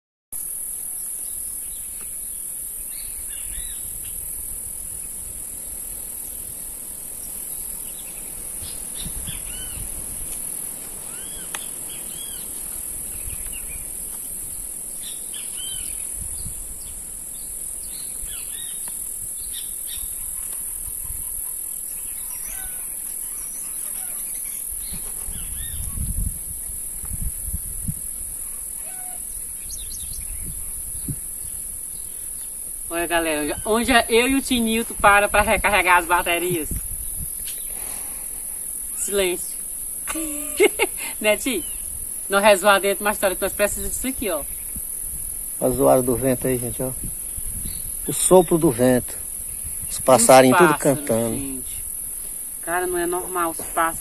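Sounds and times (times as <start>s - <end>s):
high-pitched insect drone: 0.4s - 54.0s
songbirds chirping: 1.2s - 26.7s, 28.2s - 54.0s
wind buffeting microphone: 3.2s - 11.0s, 11.7s - 14.8s, 15.6s - 21.4s, 24.8s - 28.5s, 29.3s - 32.1s, 32.9s - 37.5s, 43.0s - 52.0s.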